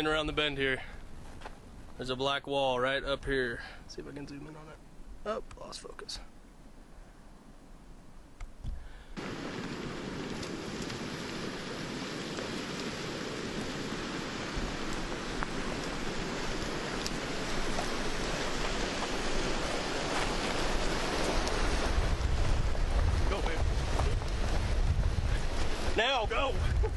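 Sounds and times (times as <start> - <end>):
rushing flood water and debris: 9.2 - 26.9.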